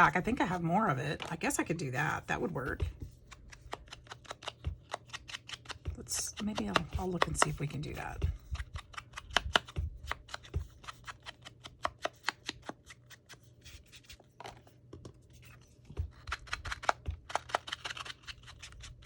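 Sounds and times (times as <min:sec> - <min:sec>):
paper clicks and rustles: 0:08.4 - 0:19.0.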